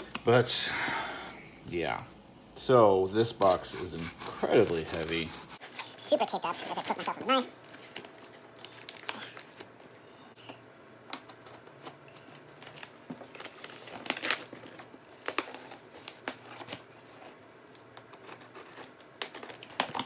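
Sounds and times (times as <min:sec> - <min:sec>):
cardboard flaps scraping and crinkling: 0:03.4 - 0:05.9
packing tape being slit and torn: 0:17.8 - 0:20.0.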